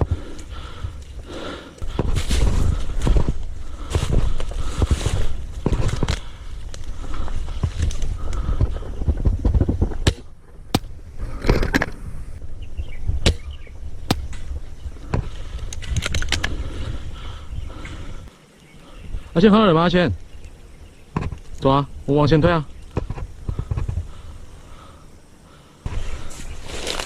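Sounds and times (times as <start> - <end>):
leaves and branches rustling: 0.0 - 27.0
branches snapping: 10.0 - 11.9, 14.1 - 14.5, 26.5 - 27.0
footsteps through brush: 25.9 - 27.0.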